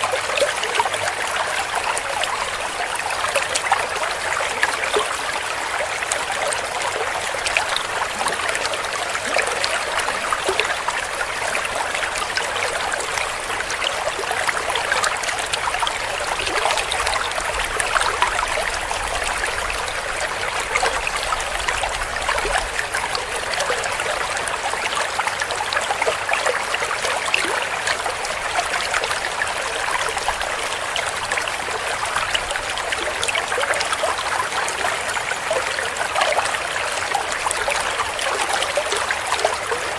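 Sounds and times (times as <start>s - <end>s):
stream babbling over stones: 0.0s - 39.9s.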